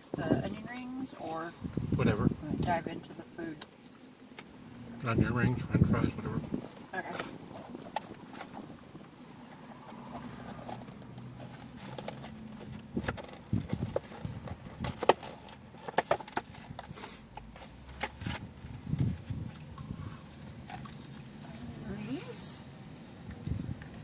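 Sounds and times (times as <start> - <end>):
chewing and crunching food: 9.6 - 21.6.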